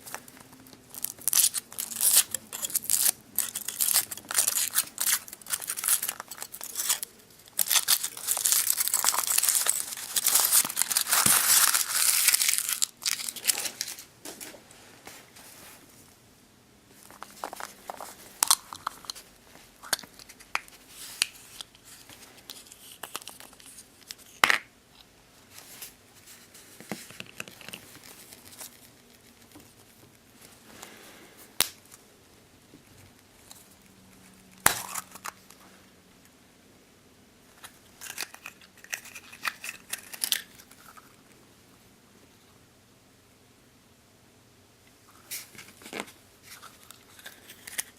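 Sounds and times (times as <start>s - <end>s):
foil wrapper tearing and crinkling: 0.8s - 14.1s, 38.0s - 41.0s, 45.5s - 47.9s.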